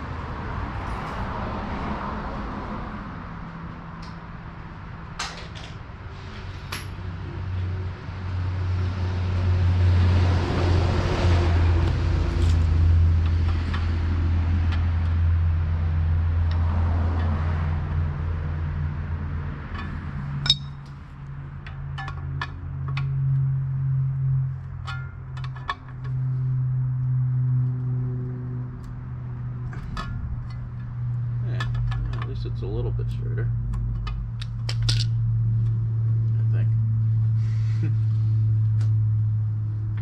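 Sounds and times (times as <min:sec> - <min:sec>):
sharp metallic clinks: 0:19.8 - 0:20.9.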